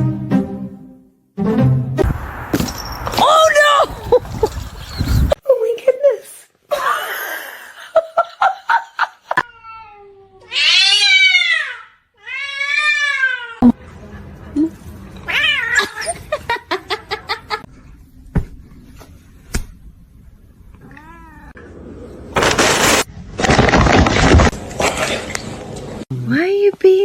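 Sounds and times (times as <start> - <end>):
cats meowing: 9.4 - 13.6, 15.2 - 16.3, 20.8 - 21.6.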